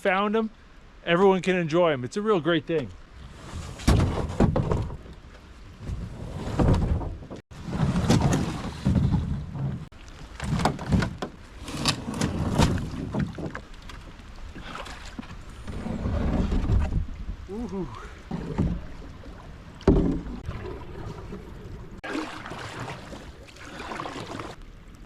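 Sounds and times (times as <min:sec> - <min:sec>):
paddle splashes: 0:07.5 - 0:24.8.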